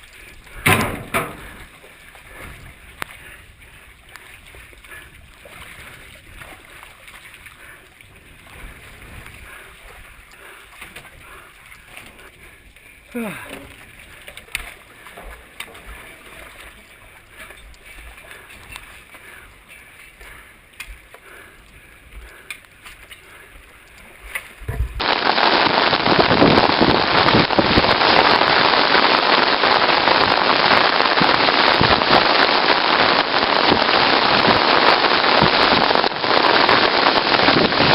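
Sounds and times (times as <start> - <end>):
heavy rain pouring: 0.0 - 10.6, 11.2 - 17.5, 25.0 - 37.9.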